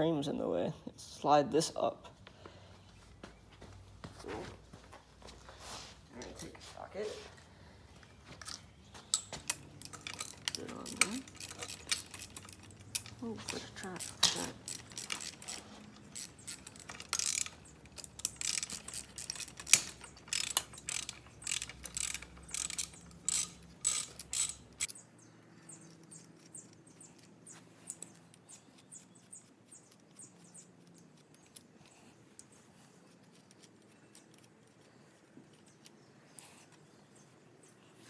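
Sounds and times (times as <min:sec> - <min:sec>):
ratchet wrench clicking: 0:09.1 - 0:25.0.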